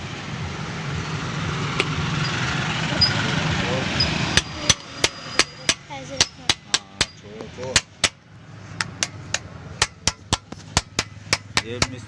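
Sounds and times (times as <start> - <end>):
hammer striking metal: 4.0 - 8.2, 8.8 - 12.0.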